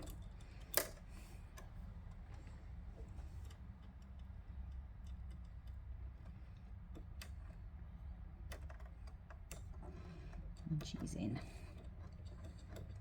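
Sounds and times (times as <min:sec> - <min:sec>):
small metal clicks and taps: 0:03.4 - 0:05.9, 0:11.7 - 0:13.0.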